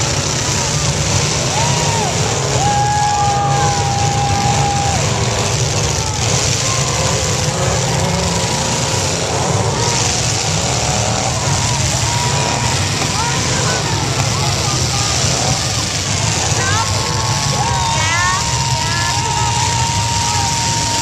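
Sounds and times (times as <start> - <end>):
car engines revving: 0.0 - 21.0.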